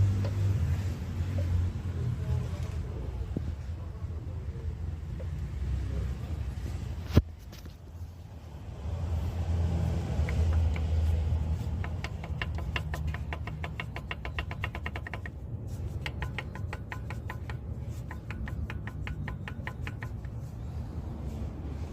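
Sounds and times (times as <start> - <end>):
engine ticking knock: 10.0 - 20.6.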